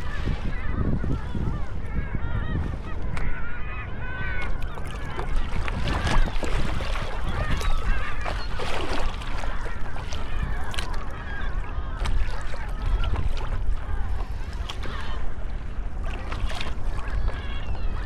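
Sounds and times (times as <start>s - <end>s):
flock of seagulls calling: 0.0s - 18.0s.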